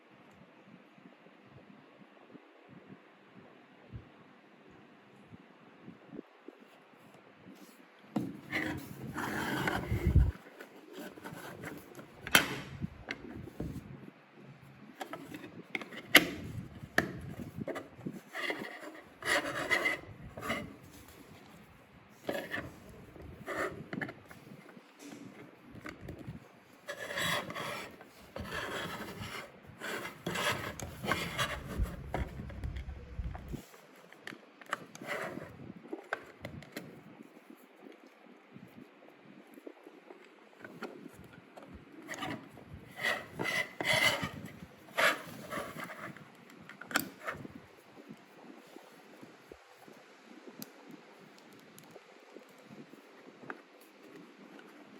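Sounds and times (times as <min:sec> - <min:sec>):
packaging rubbing and scraping: 0:26.9 - 0:33.0, 0:42.0 - 0:46.2.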